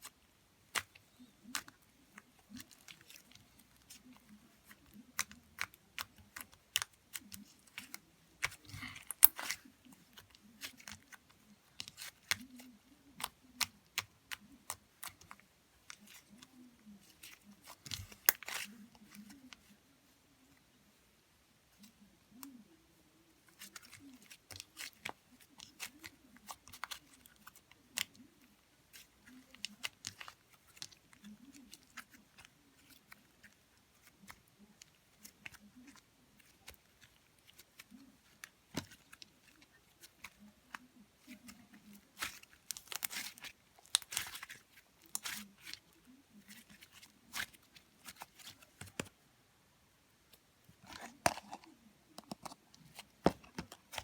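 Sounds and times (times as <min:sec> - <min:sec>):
crinkling and crackling clicks: 0:00.0 - 0:19.8, 0:23.4 - 0:49.2, 0:50.2 - 0:54.0.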